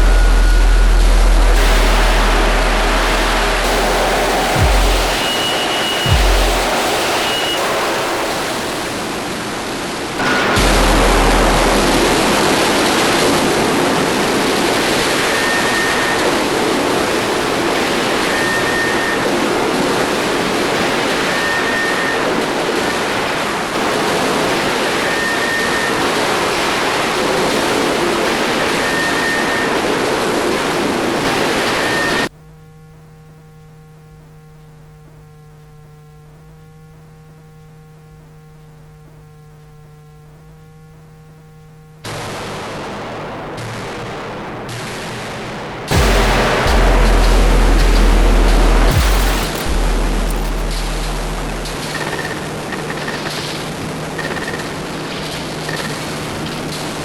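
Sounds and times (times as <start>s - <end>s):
low drone of held tones: 0.0s - 6.8s, 10.2s - 13.1s, 45.9s - 51.9s
faint high beeps: 0.0s - 8.2s, 18.1s - 19.3s, 45.9s - 53.3s, 54.1s - 54.8s
loud steady electronic hiss: 0.0s - 32.7s, 41.6s - 57.0s.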